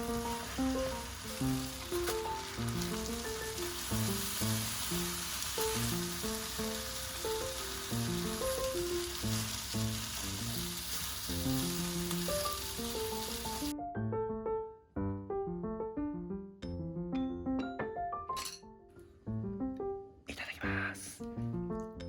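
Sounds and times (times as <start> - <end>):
food sizzling in a pan: 0.0 - 13.7.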